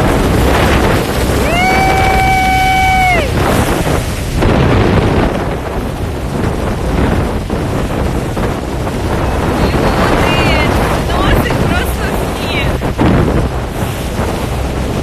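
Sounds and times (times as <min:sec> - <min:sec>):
rushing waterfall: 0:00.0 - 0:05.4
wind buffeting microphone: 0:00.0 - 0:15.0.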